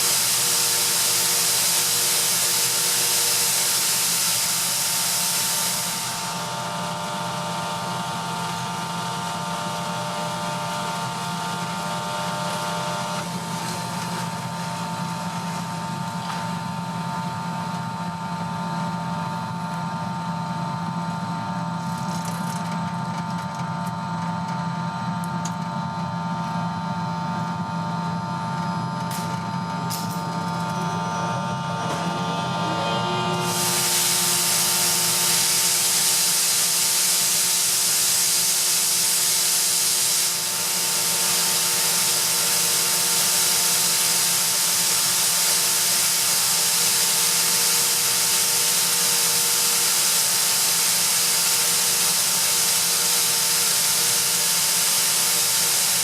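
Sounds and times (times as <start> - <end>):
loud hiss of air: 0.0 - 8.5, 31.8 - 56.0
air compressor running with whine: 0.0 - 56.0.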